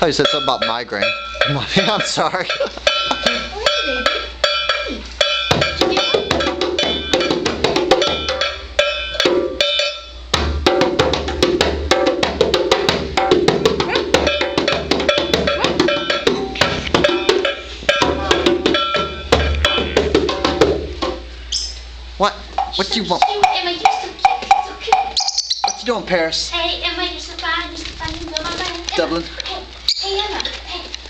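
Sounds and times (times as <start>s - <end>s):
small ringing percussion: 0.0s - 10.4s, 13.8s - 20.0s, 22.6s - 25.9s.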